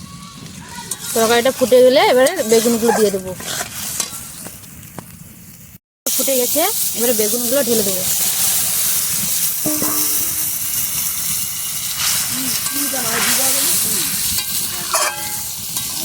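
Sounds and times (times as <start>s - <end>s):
curry boiling and sizzling: 0.0s - 16.0s
utensil scraping pan: 1.0s - 4.2s, 9.2s - 10.9s
utensil knocking on pan: 9.6s - 10.6s.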